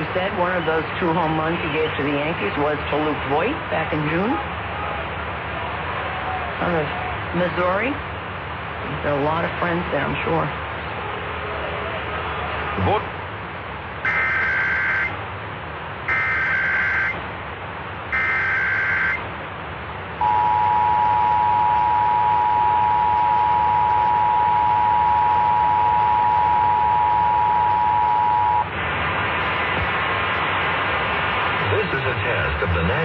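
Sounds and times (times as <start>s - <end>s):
radio hiss: 0.0s - 4.5s, 8.7s - 13.2s, 14.0s - 15.2s, 16.0s - 17.3s, 18.0s - 19.4s, 20.2s - 33.0s
two-tone alert signal: 14.1s - 15.1s, 18.2s - 19.2s, 20.2s - 28.7s
harsh data screech: 14.1s - 15.2s, 16.1s - 17.2s, 18.1s - 19.2s.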